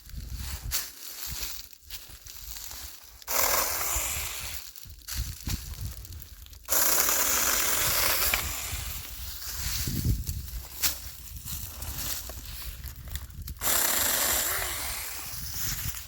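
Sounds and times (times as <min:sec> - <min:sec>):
chainsaw cutting tree limbs: 0:03.2 - 0:04.8, 0:06.6 - 0:09.2, 0:13.5 - 0:16.0.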